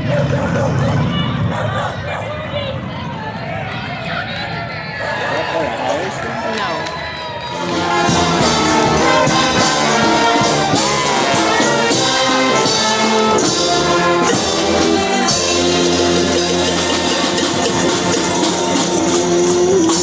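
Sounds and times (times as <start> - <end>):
brass instruments: 5.0 - 20.0
steady tambourine beat: 7.5 - 20.0.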